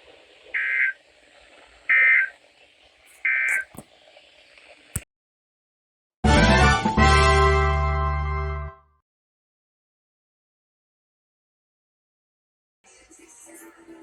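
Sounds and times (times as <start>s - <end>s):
faint radio hiss: 0.5s - 1.0s, 3.1s - 3.8s, 12.9s - 14.0s
data tone bursts: 0.6s - 1.0s, 3.2s - 3.7s.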